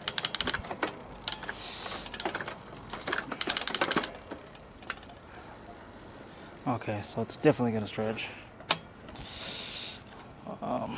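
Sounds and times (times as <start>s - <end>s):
brief hiss: 9.2s - 10.0s.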